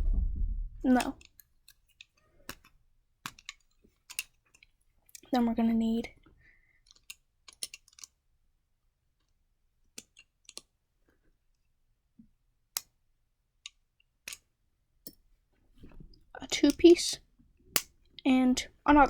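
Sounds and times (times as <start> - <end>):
plastic bricks clicking: 0.9 - 5.3, 6.8 - 8.2, 10.0 - 10.7, 13.6 - 14.5.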